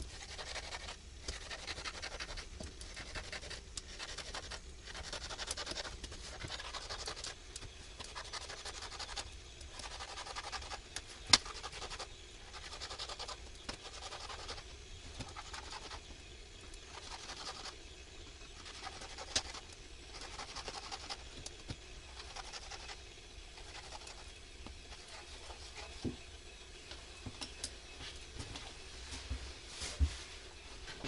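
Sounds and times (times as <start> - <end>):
rustling and scratching: 0.0 - 16.1, 18.5 - 27.2.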